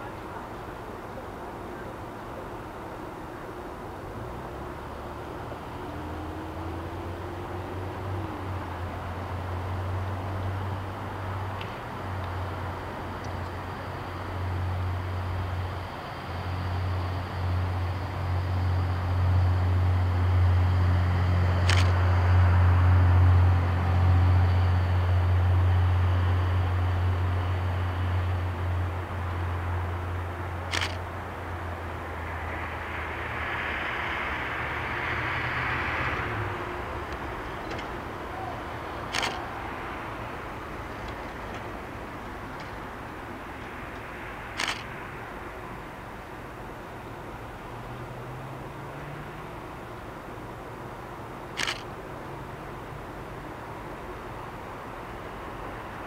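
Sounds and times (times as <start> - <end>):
large engine humming: 0.0 - 56.0
sharp clicks: 21.6 - 22.0, 30.7 - 31.0, 39.0 - 39.6, 43.6 - 44.9, 51.6 - 51.9.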